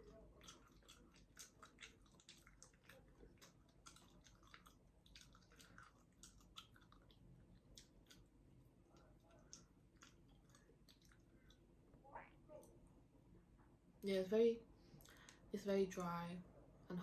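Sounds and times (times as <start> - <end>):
chewing dry baked good: 0.0 - 12.8.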